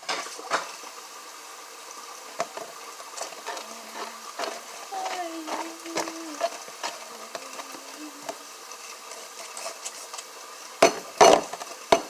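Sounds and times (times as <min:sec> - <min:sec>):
hard objects knocking on table: 0:10.8 - 0:12.0.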